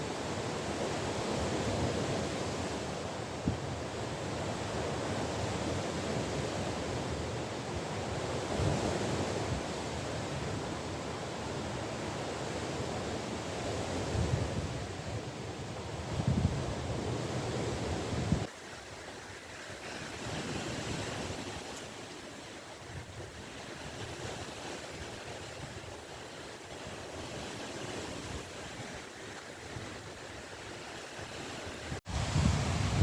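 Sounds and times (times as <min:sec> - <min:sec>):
sea waves washing on shore: 0:00.0 - 0:33.0
wind gust on microphone: 0:13.8 - 0:15.2, 0:16.0 - 0:18.5, 0:31.2 - 0:33.0.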